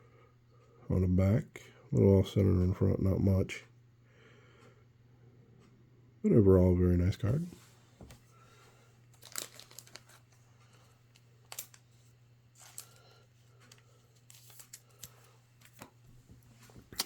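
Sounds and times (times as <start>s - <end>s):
trading cards rustling and clicking: 9.1s - 17.0s.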